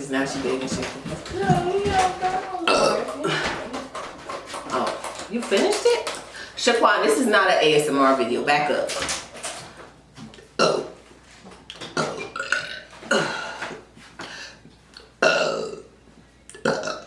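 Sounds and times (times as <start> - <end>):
woman burping: 2.6 - 3.8, 10.6 - 11.0, 12.0 - 13.6, 15.0 - 15.9, 16.5 - 17.0.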